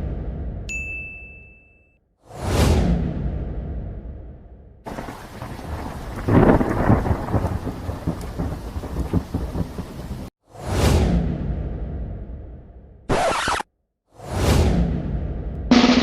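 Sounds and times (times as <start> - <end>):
steady rain: 4.9 - 10.3
thunder rumbling: 4.9 - 10.3.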